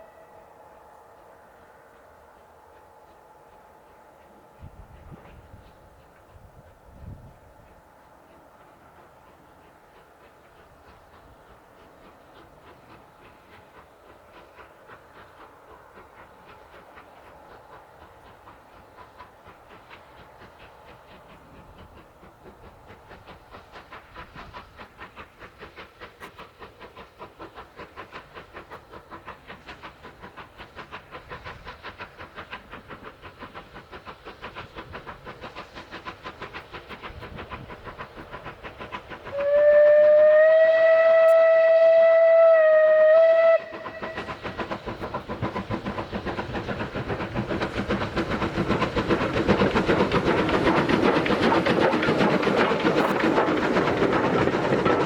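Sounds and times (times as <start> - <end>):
steam whistle blast: 0.0 - 2.0, 39.3 - 44.3
steam locomotive exhaust beats: 0.0 - 55.0.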